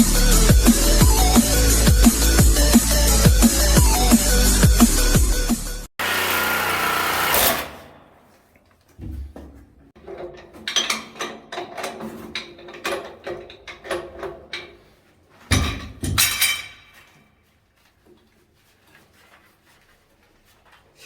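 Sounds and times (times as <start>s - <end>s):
metal tools clattering and knocking: 9.9s - 17.4s.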